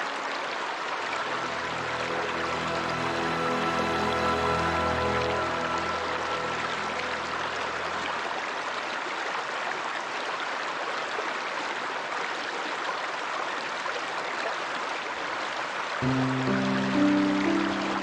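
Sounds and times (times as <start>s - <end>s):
stream water rushing: 0.0s - 18.0s
held music tones: 1.2s - 8.3s, 16.0s - 18.0s.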